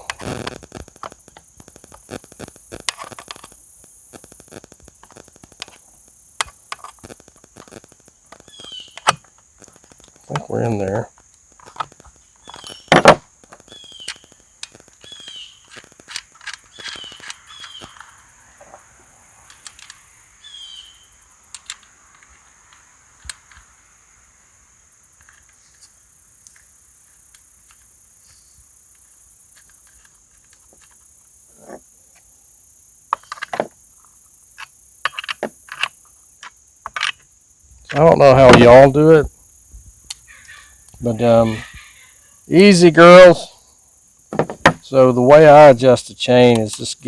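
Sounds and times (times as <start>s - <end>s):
high insect drone: 0.0s - 47.0s
bird chirping: 5.1s - 11.0s, 11.9s - 16.0s, 16.6s - 21.7s, 37.8s - 47.0s
metal parts clicking: 13.8s - 18.1s.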